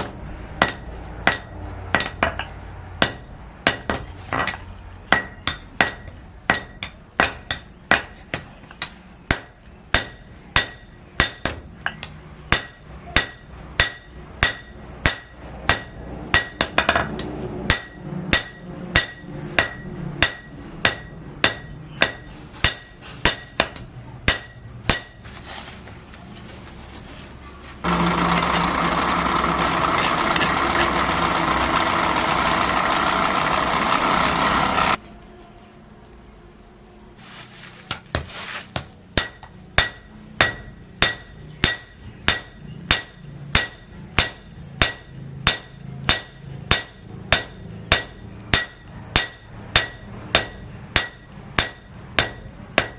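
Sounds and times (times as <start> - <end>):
hammer striking iron on anvil: 0.0 - 25.2, 37.9 - 52.9
loud steady machine noise: 27.8 - 35.0.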